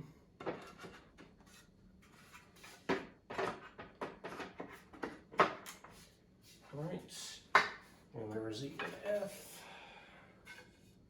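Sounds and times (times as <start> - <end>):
wood knocking and scraping on wood: 8.7 - 9.1.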